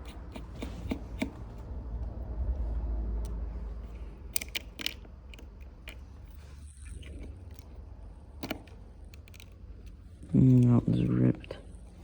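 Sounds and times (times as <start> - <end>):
small tool clicks and taps: 0.3 - 1.4.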